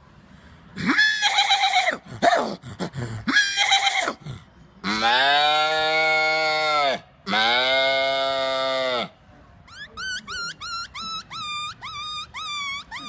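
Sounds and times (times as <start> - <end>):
person imitating animal calls: 9.7 - 13.0.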